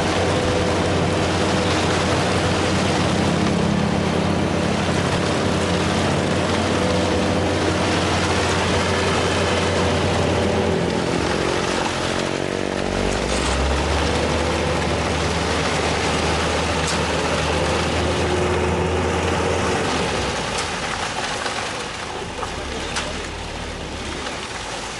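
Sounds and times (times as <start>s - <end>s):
heavy vehicle engine under load: 0.0s - 24.9s.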